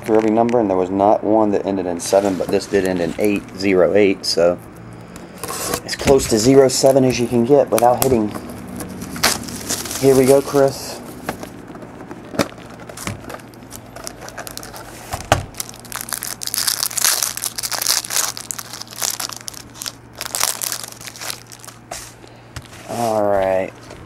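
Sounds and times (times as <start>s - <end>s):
plastic wrapping tearing and crinkling: 7.8s - 10.8s, 12.0s - 21.9s
packaging clicks: 12.1s - 14.9s, 15.6s - 21.8s.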